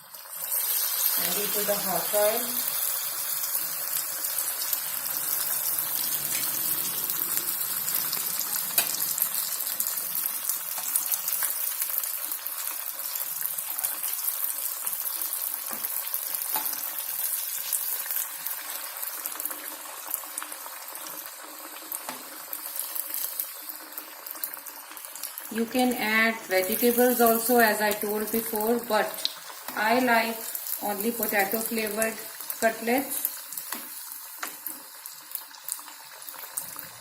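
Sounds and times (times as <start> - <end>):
cutlets sizzling in oil: 0.0 - 37.0.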